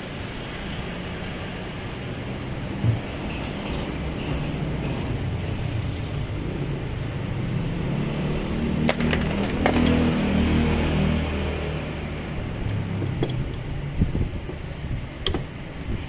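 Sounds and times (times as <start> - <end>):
hand tools clinking: 8.9 - 10.2.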